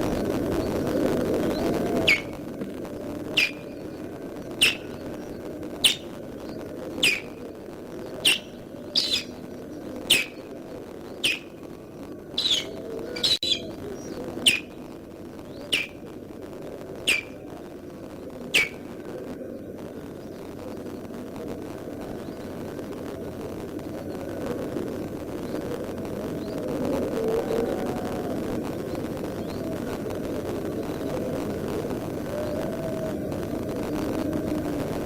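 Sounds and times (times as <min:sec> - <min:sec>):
low background noise: 0:00.0 - 0:35.0
osprey alarm calls: 0:00.6 - 0:16.2, 0:16.9 - 0:19.0.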